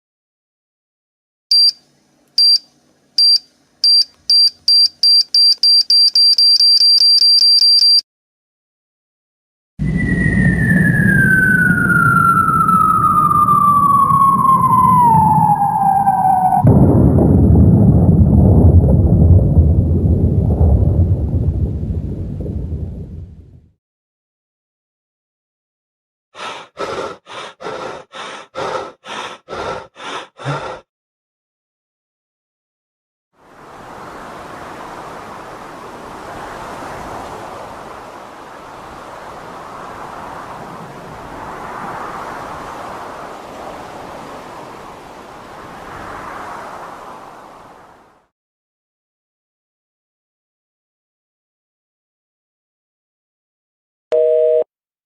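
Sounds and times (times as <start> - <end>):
person panting hard: 26.4 - 30.9.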